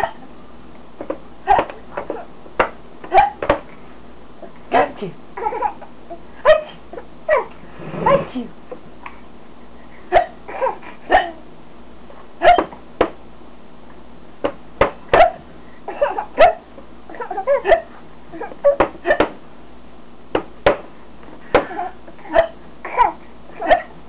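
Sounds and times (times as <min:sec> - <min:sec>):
person making fake hiccups: 0:00.0 - 0:00.2, 0:03.1 - 0:03.4, 0:10.1 - 0:11.4, 0:12.4 - 0:12.8, 0:15.1 - 0:15.4, 0:17.6 - 0:19.4, 0:21.6 - 0:24.0
baby laughing and squealing: 0:05.4 - 0:05.9.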